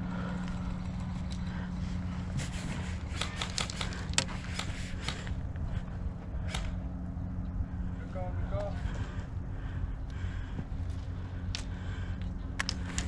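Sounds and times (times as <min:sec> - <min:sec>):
steady low hum: 0:00.0 - 0:13.0
airsoft guns firing: 0:03.1 - 0:05.4.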